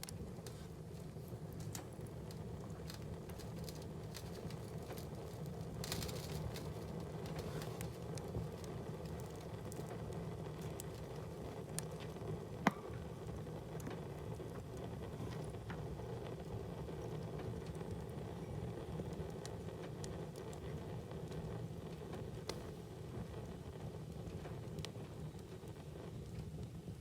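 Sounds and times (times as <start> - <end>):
wood fire crackling: 0.0 - 27.0
sharp pop of fire: 12.6 - 13.1.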